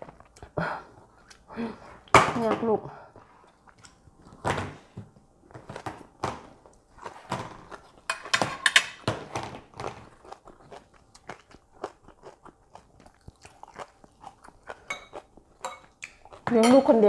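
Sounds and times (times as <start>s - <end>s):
tableware clattering: 8.1s - 9.5s.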